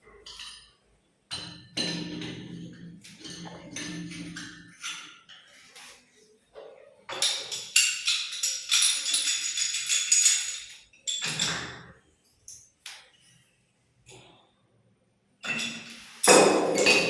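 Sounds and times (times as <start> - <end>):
metal clinking and jingling: 7.1 - 11.7.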